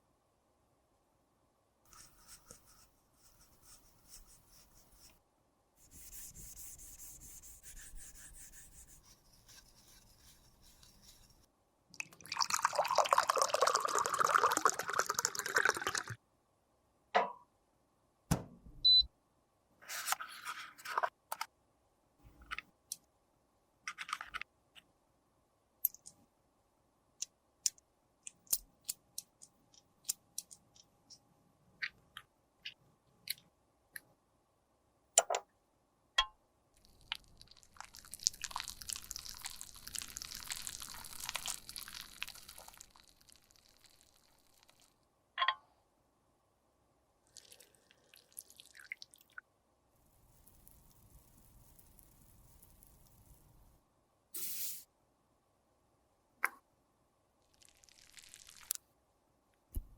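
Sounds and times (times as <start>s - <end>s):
makeup crackling and rubbing: 5.8s - 11.5s.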